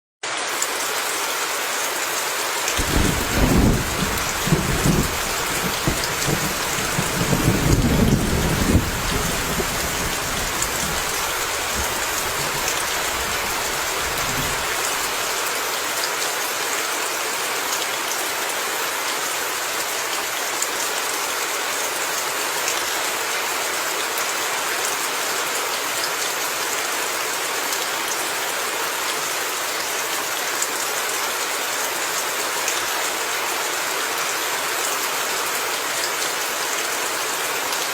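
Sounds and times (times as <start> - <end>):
steady rain falling: 0.2 - 37.9
low rumble of thunder: 2.8 - 15.3.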